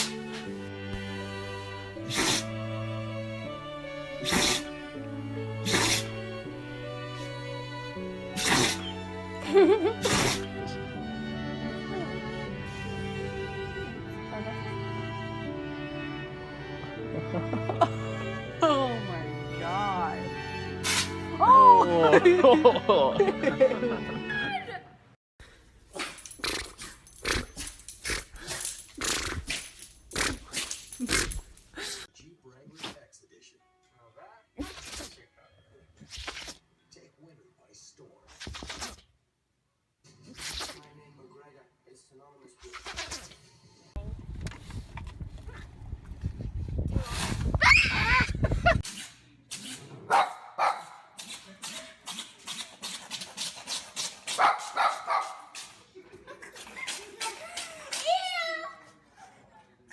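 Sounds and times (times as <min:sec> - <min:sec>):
dog sneezing: 0:02.0 - 0:02.5, 0:04.2 - 0:04.8, 0:05.6 - 0:06.2, 0:08.3 - 0:09.0, 0:09.9 - 0:10.6, 0:20.8 - 0:21.2, 0:25.9 - 0:28.3, 0:29.0 - 0:31.4, 0:32.8 - 0:33.0, 0:34.6 - 0:35.2, 0:38.3 - 0:39.1, 0:40.3 - 0:40.9, 0:48.8 - 0:55.8.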